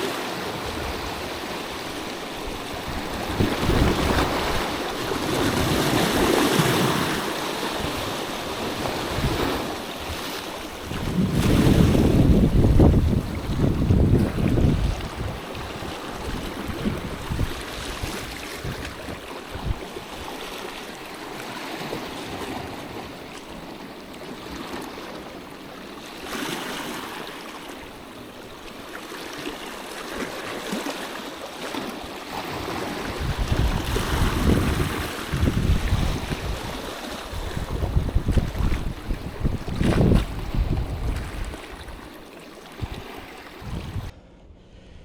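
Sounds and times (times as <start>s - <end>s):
sea washing at shore: 0.0s - 44.2s
wind buffeting microphone: 0.6s - 20.5s, 32.5s - 42.1s, 42.8s - 44.3s.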